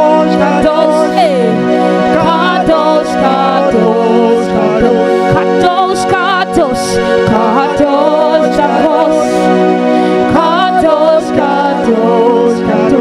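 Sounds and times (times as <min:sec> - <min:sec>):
sustained keyboard chords: 0:00.0 - 0:13.0
wavering melody with vibrato: 0:00.0 - 0:13.0.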